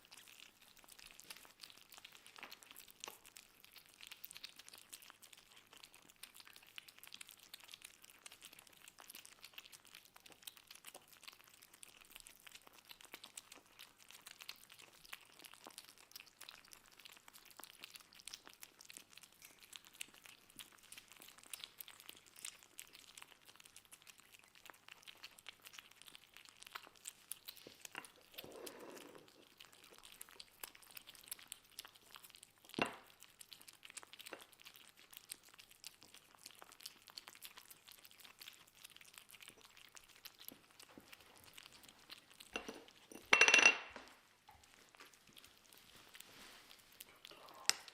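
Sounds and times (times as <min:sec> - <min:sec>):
kittens crunching food: 0:00.0 - 0:47.9.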